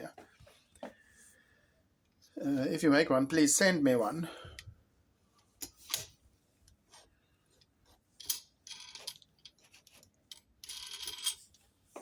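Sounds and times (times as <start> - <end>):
small metal parts clicking: 8.2 - 11.6.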